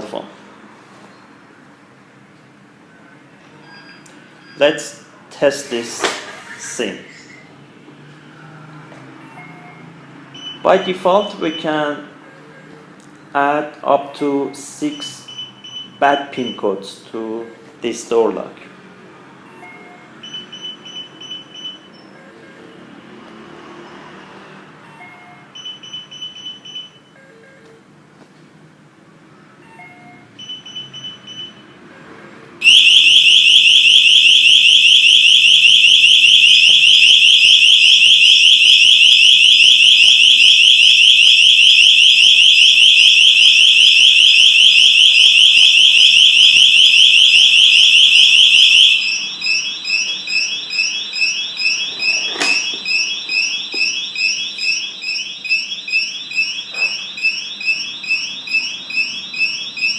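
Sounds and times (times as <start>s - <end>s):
alarm beeping: 3.6s - 5.1s, 9.2s - 12.6s, 19.4s - 23.0s, 24.8s - 27.6s, 29.7s - 31.8s, 32.6s - 59.9s
keypad beeps: 9.3s - 11.7s, 19.5s - 22.7s, 24.9s - 27.8s, 29.7s - 31.8s, 48.8s - 59.9s
warbling electronic alarm tone: 32.6s - 59.9s.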